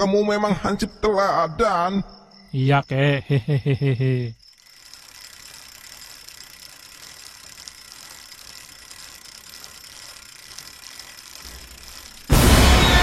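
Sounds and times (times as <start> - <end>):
crickets chirping: 0.0 - 13.0
faint mechanical ticking: 4.3 - 12.3.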